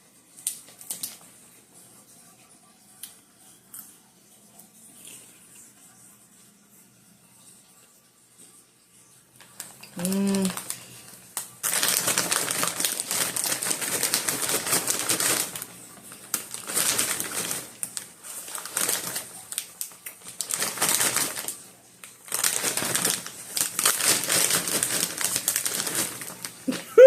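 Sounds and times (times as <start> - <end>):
chewing and crunching popcorn: 2.9 - 5.8, 9.3 - 26.8.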